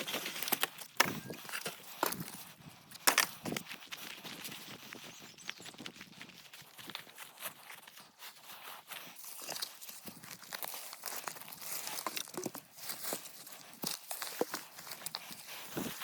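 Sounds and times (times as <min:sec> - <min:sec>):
dry brush crunching and snapping: 0:00.0 - 0:03.7, 0:09.2 - 0:16.0.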